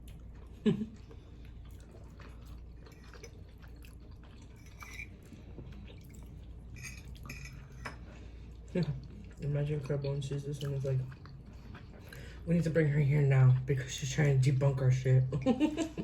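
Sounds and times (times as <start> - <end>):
person chewing: 0.0 - 12.5.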